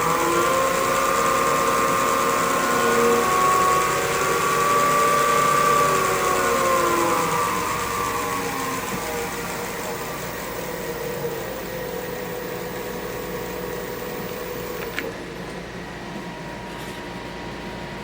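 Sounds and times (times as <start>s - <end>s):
wood lathe winding down: 0.0s - 15.1s
click: 14.7s - 15.6s.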